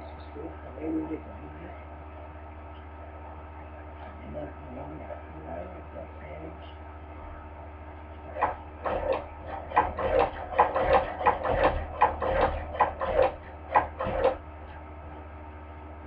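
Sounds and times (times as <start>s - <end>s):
sewing machine clacking: 8.3s - 14.4s.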